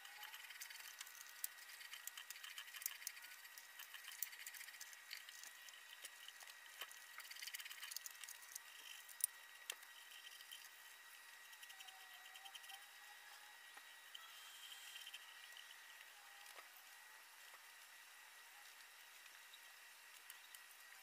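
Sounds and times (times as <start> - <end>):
faint steady high tone: 11.4 - 17.5.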